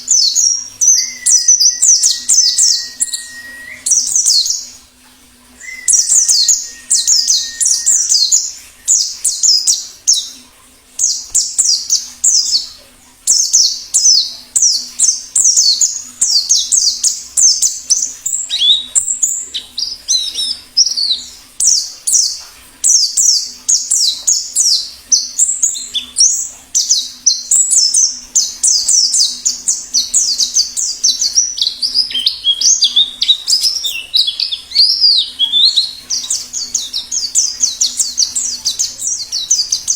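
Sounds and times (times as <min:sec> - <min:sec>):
bird twittering song: 0:00.0 - 0:04.8, 0:05.6 - 0:10.4, 0:11.0 - 0:39.9
faint low hum: 0:00.0 - 0:39.9.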